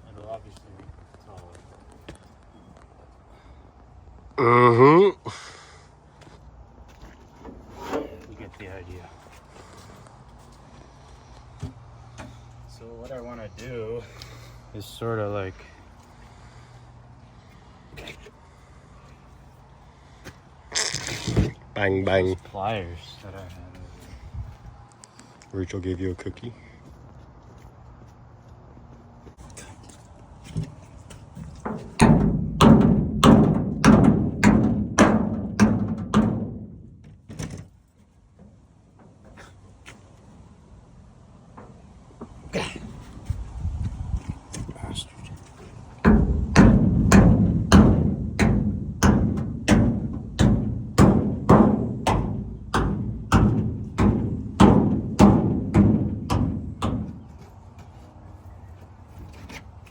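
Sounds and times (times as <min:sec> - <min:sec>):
heavy ringing knocks: 0:31.6 - 0:37.2, 0:46.0 - 0:57.4
heavy hammer blows on metal: 0:46.0 - 0:57.4.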